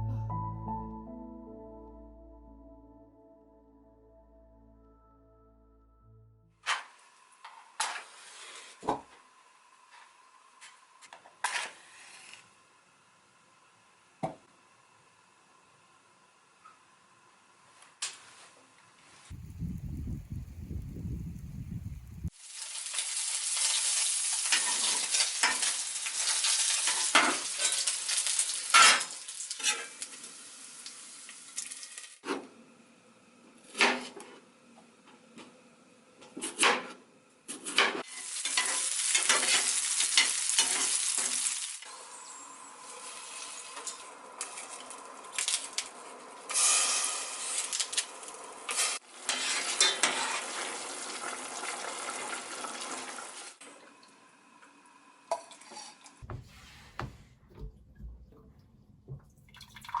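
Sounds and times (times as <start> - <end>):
food sizzling in a frying pan: 19.3 - 32.2, 38.0 - 45.7, 46.5 - 53.6.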